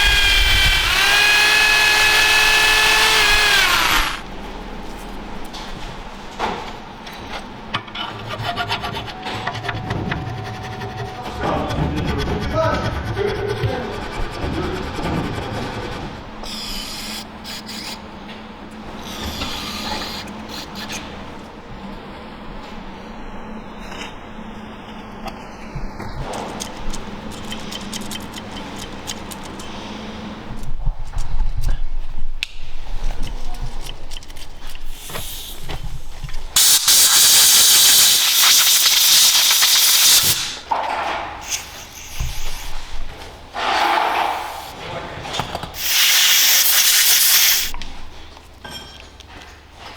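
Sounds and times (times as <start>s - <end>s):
pressurised jet hissing: 0.0s - 4.2s, 36.6s - 40.7s, 41.4s - 42.9s, 45.8s - 47.7s.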